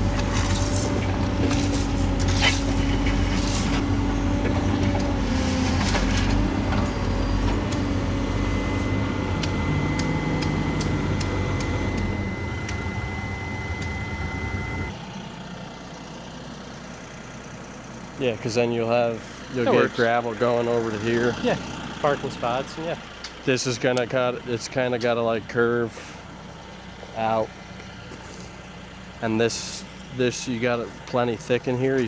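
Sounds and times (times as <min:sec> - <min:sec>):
steady high whine: 0:00.0 - 0:15.0
construction machine engine running: 0:00.0 - 0:32.0.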